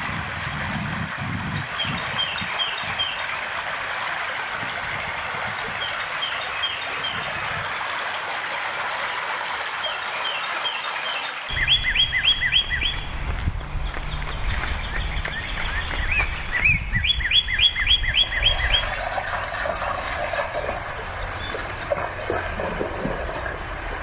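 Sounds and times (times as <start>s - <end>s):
stream babbling: 0.0s - 24.0s
low rumble: 11.5s - 18.6s
small bird chirping: 11.5s - 19.0s.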